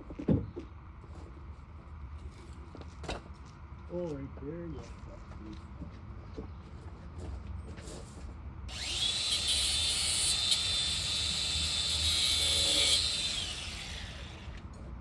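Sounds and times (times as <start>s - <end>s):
angle grinder cutting: 8.7s - 14.6s.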